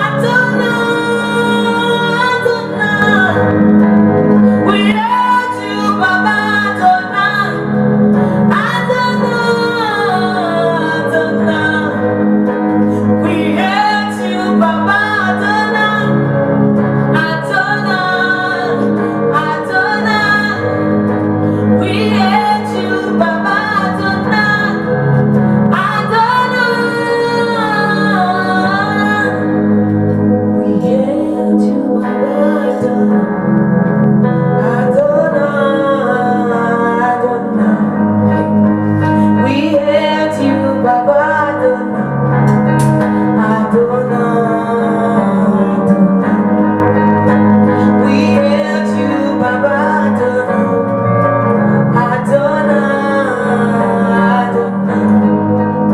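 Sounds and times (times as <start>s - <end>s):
sustained instrumental accompaniment: 0.0s - 55.9s
woman singing: 0.0s - 55.9s.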